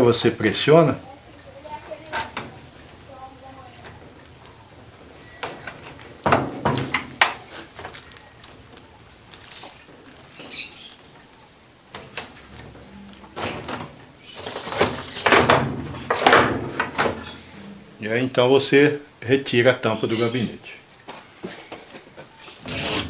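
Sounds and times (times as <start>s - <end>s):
plastic panel rattling and scraping: 12.4s - 17.4s.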